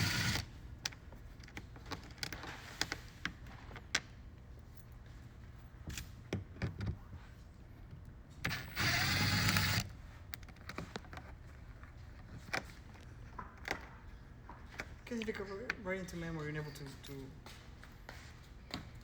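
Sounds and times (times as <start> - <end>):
small electric motor running: 0.0 - 0.5, 8.5 - 9.9.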